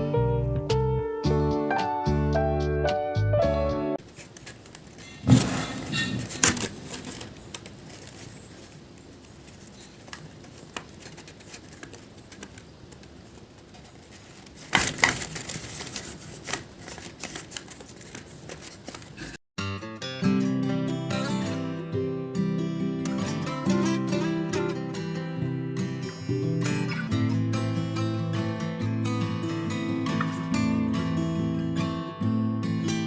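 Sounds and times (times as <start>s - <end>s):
paper rustling and crinkling: 4.0s - 19.4s.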